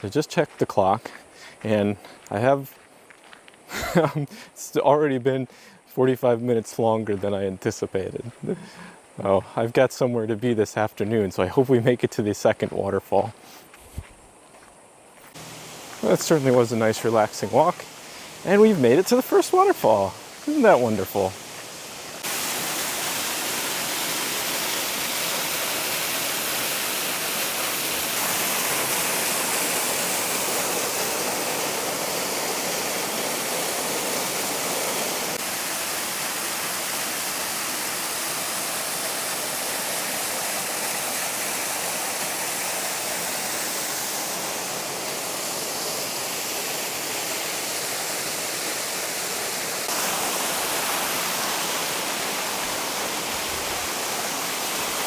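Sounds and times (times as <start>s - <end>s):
waterfall rushing: 15.3s - 55.0s.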